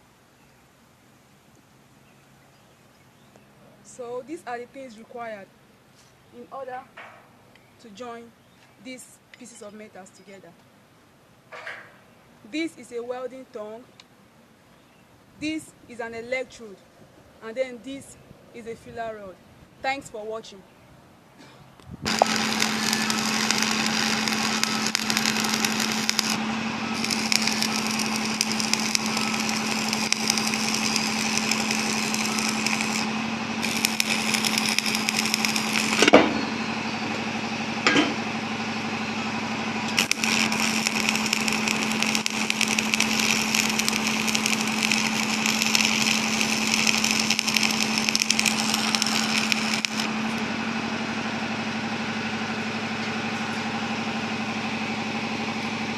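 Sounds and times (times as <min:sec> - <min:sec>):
machine hum: 0:22.0 - 0:55.9
welding arc crackling and hissing: 0:22.1 - 0:36.2, 0:39.9 - 0:50.1.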